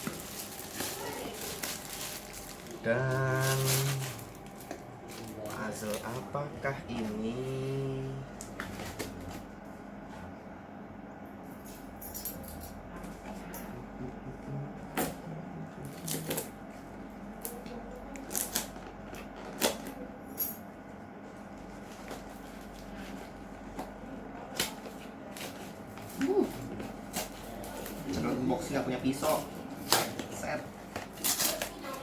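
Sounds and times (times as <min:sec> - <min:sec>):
packaging rustling: 0:00.0 - 0:06.2
steady low hum: 0:00.0 - 0:32.0.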